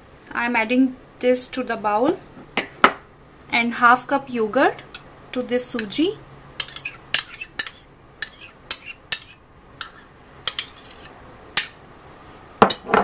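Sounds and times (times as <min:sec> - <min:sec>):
spoon clinking against a bowl: 0:06.6 - 0:11.8.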